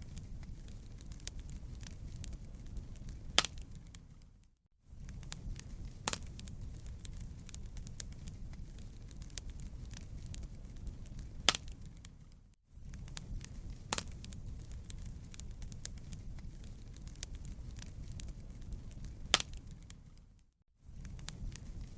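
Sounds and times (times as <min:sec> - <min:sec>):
sharp pops of fire: 0:00.0 - 0:04.3, 0:05.0 - 0:20.2, 0:21.0 - 0:21.9
wood fire crackling: 0:00.0 - 0:21.9.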